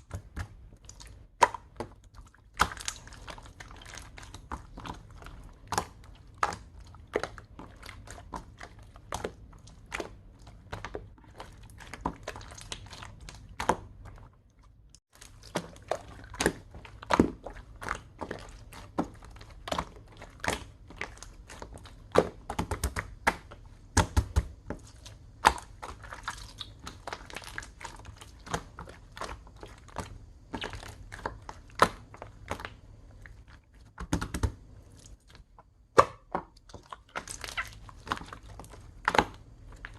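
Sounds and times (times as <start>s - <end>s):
slime squished by hand: 0.0s - 39.9s.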